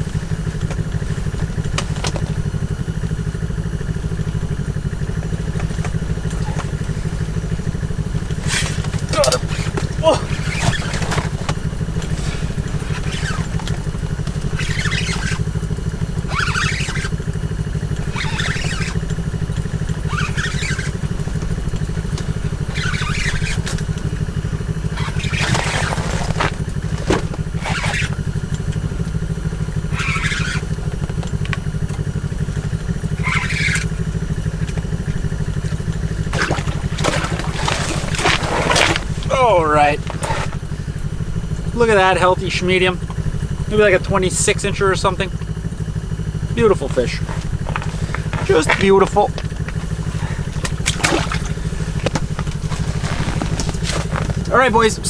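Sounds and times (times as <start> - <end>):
low engine-like hum: 0.0 - 55.0
short scraping or rustling: 24.9 - 28.2, 36.3 - 40.8, 46.9 - 54.9.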